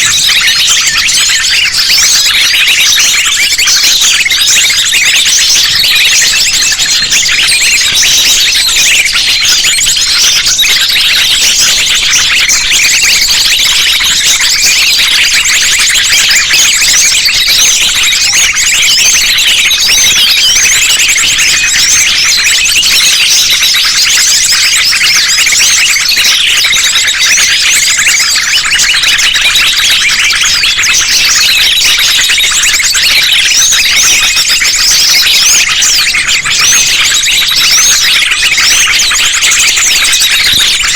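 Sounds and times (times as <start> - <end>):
small birds chirping and trilling: 0.0 - 40.9.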